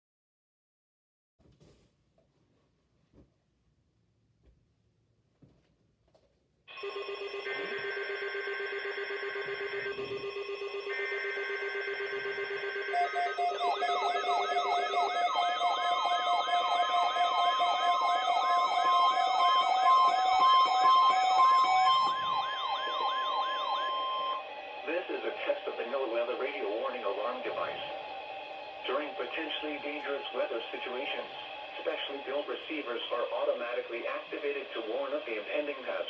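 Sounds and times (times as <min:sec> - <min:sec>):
steady electronic alarm tones: 0:06.7 - 0:33.2
rapid siren-like warble: 0:06.8 - 0:32.9.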